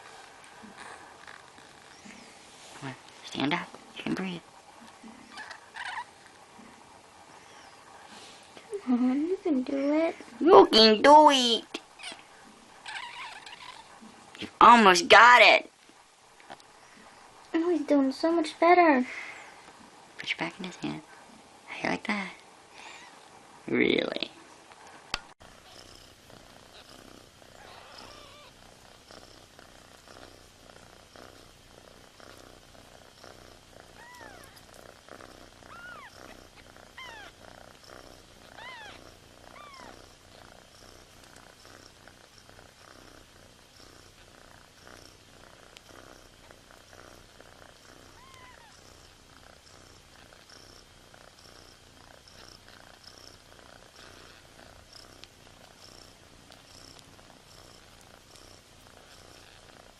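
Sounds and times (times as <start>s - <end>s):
cat purring: 0.0s - 15.4s, 25.0s - 59.9s
kittens peeping: 0.6s - 2.4s, 5.0s - 6.2s, 7.3s - 8.0s, 11.9s - 14.1s, 22.8s - 23.2s, 25.6s - 28.8s, 33.0s - 41.4s, 47.9s - 49.2s.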